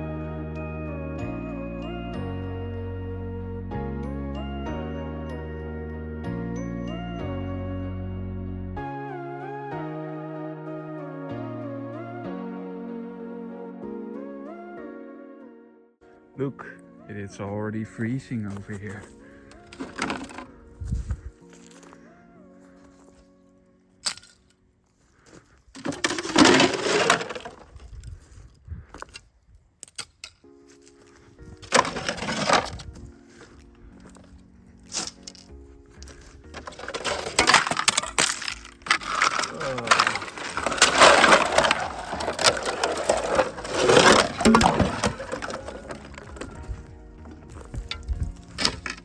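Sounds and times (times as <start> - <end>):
small ice clinks: 25.8 - 27.6, 36.6 - 46.6
ice cracking and shattering: 25.8 - 27.8, 31.6 - 32.8, 36.5 - 46.6.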